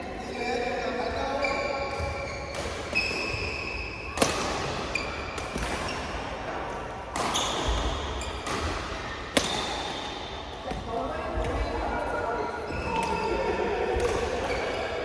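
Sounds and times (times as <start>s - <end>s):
shoes squeaking on court floor: 0.2s - 6.2s, 7.2s - 8.8s
racket hitting shuttlecock: 1.9s - 6.2s, 7.1s - 10.8s.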